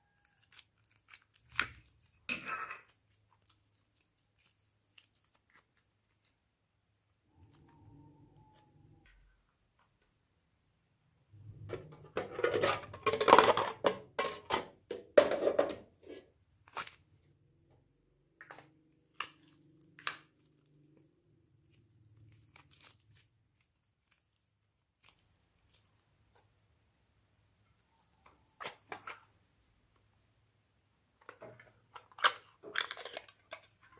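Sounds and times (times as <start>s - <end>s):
rustling and tearing material: 0.0s - 8.7s, 16.0s - 17.4s, 19.0s - 26.6s.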